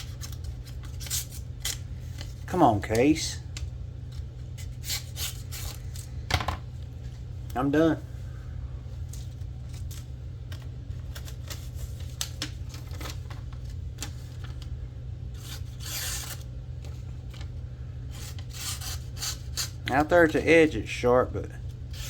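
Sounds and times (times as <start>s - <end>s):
knife blade scraping paper: 0.0s - 2.4s, 4.1s - 6.1s, 9.2s - 12.3s, 15.3s - 17.4s, 18.1s - 20.4s
paper tearing rustle: 0.0s - 3.3s, 9.0s - 14.7s, 15.3s - 20.4s
steady low hum: 0.0s - 22.0s.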